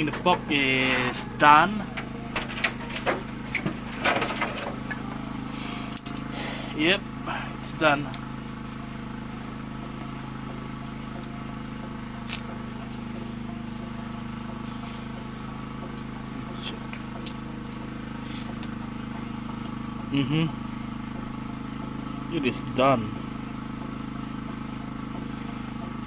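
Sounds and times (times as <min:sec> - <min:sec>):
low mechanical motor hum: 0:00.0 - 0:26.0.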